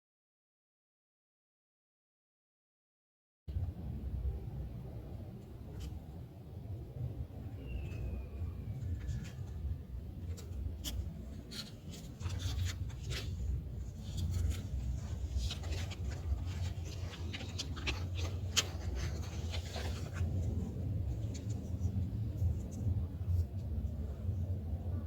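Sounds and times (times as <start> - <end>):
steady low rumble: 3.5 - 25.0
animal rustles and clicks: 8.7 - 23.7.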